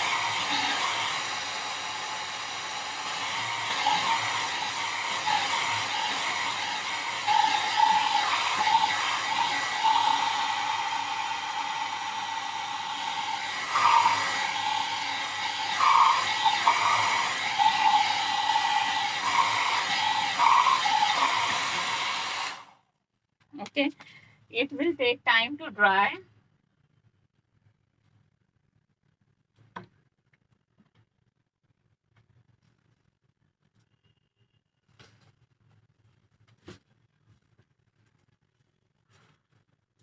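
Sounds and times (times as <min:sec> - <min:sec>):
hair dryer blowing: 0:00.0 - 0:22.7.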